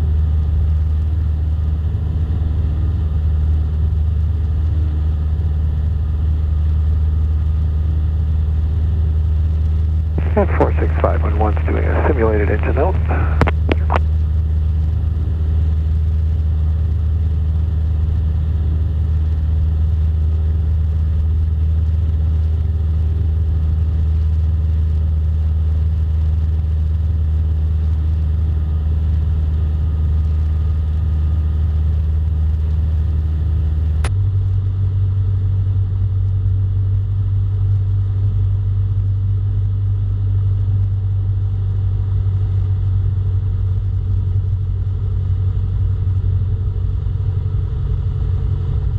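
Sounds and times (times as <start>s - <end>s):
light aircraft engine droning: 0.0s - 48.9s.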